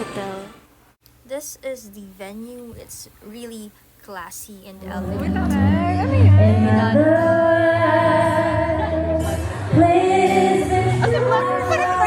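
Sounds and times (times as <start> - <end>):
woman singing long held notes: 4.8 - 12.0
low musical accompaniment: 4.9 - 12.0.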